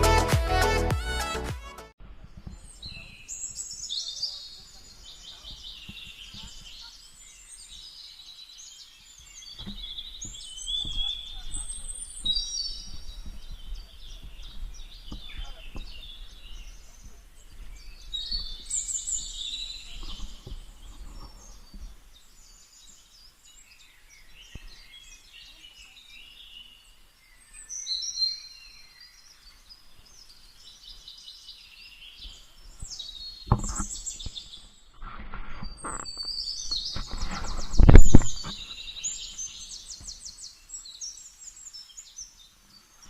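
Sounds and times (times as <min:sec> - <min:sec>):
birds chirping and whistling: 0:08.8 - 0:23.0, 0:27.3 - 0:42.2
thumps and rustles: 0:09.5 - 0:16.2, 0:33.4 - 0:34.4, 0:35.0 - 0:38.7.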